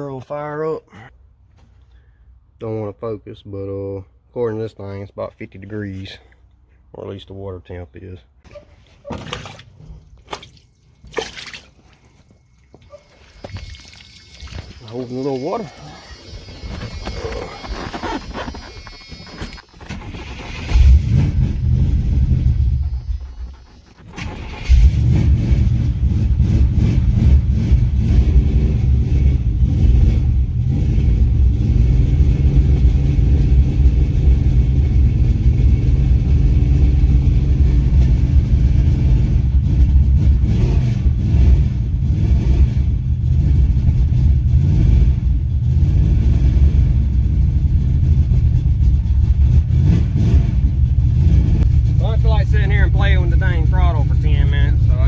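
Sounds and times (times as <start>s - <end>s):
engine running with revving: 13.4s - 55.0s.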